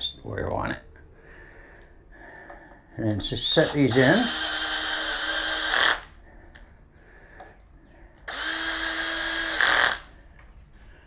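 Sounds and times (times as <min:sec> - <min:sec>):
power drill motor whine: 0:03.6 - 0:06.2, 0:08.3 - 0:10.1.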